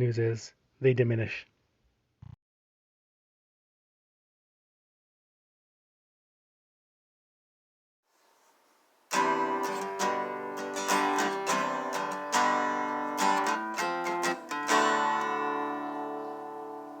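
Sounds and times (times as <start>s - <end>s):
acoustic guitar strummed chords: 9.1s - 17.0s.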